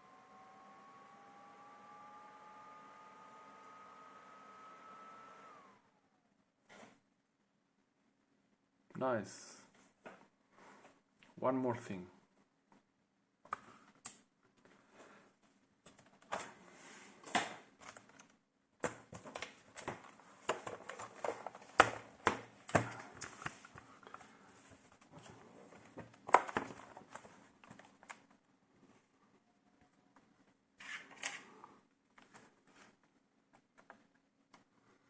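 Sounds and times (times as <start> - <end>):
laptop parts clicking and knocking: 17.3 - 24.2, 26.0 - 28.2.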